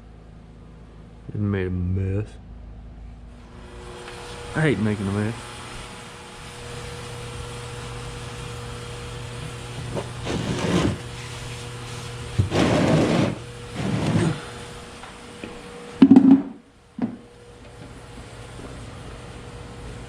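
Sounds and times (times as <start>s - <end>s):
steady low hum: 0.0s - 20.0s
scraping and rustling: 9.8s - 14.6s
loud knock: 16.0s - 17.2s.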